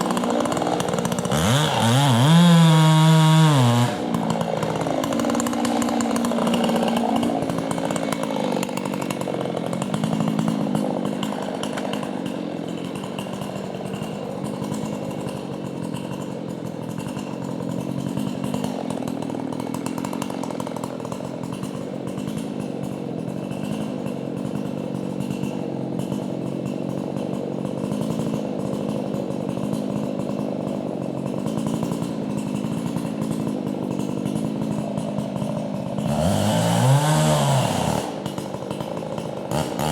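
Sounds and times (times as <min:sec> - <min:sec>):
chainsaw sawing into tree: 0:00.0 - 0:39.9.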